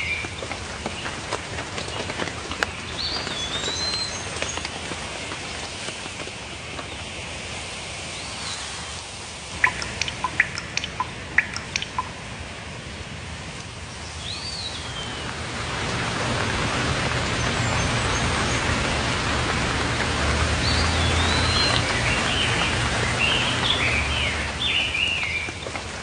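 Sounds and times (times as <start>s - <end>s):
songbirds calling: 0.0s - 7.2s, 9.5s - 12.3s, 13.8s - 15.4s, 17.1s - 19.3s, 20.4s - 26.0s
steady rain-like hiss: 0.0s - 26.0s
sharp bird chirps: 9.6s - 12.1s
whistled bird note: 9.6s - 12.1s.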